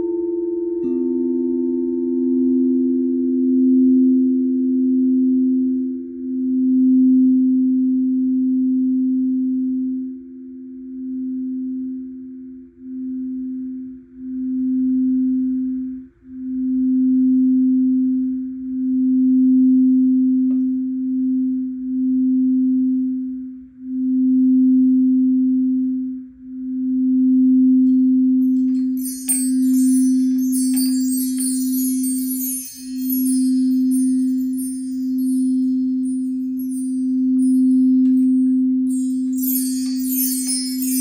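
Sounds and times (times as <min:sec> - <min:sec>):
singing bowl low tone: 0:00.0 - 0:41.0
shimmering chimes: 0:28.4 - 0:41.0.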